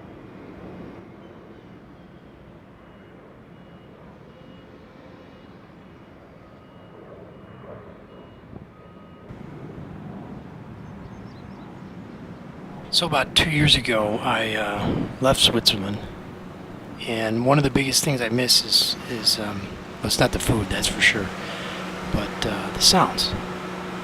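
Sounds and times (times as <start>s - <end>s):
faint high beep: 2.0s - 9.3s
low rumbling background noise: 9.3s - 24.0s.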